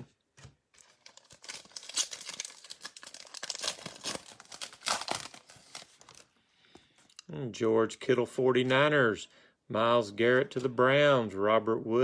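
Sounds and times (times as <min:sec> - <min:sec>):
wrapper tearing and crinkling: 0:00.7 - 0:06.2.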